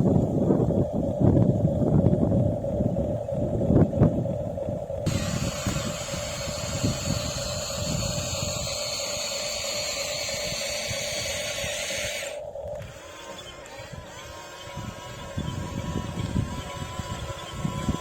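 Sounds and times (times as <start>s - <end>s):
motor whine: 4.9s - 18.0s
hiss: 5.1s - 15.2s.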